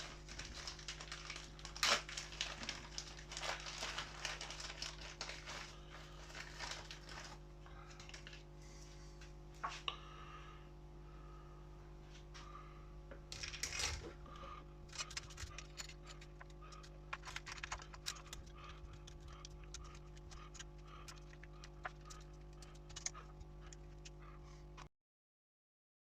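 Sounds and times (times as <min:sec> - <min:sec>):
low hum: 0:00.0 - 0:24.9
chain links clicking and rattling: 0:14.9 - 0:23.2.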